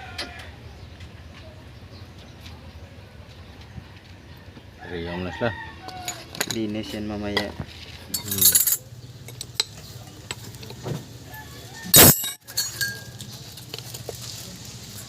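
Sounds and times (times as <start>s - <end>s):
metal tools clinking: 6.0s - 7.0s, 8.1s - 10.4s, 11.9s - 14.0s
loud metal clank: 12.0s - 13.0s.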